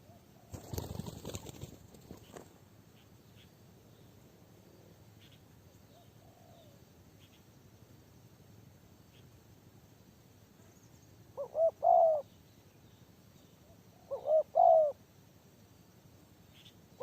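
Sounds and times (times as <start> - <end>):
dove cooing: 5.9 - 6.8, 11.4 - 12.3, 13.9 - 15.0.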